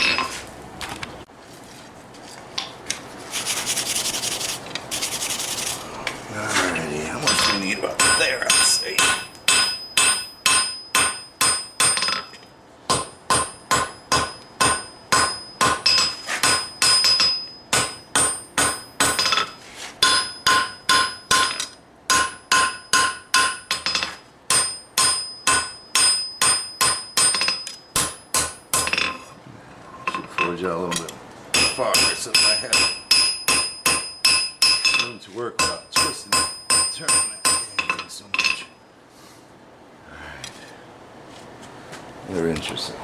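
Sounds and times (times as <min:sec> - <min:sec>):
hammer striking steel on anvil: 0:07.3 - 0:29.2, 0:31.6 - 0:38.7.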